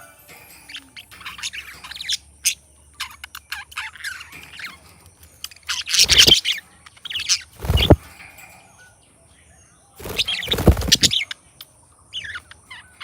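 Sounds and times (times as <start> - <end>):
budgie chirping and warbling: 5.6 - 8.0, 10.0 - 11.3.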